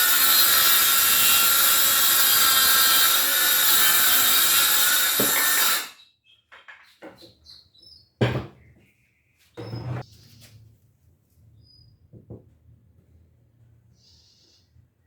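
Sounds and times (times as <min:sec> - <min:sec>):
circular saw cutting wood: 0:00.0 - 0:06.0.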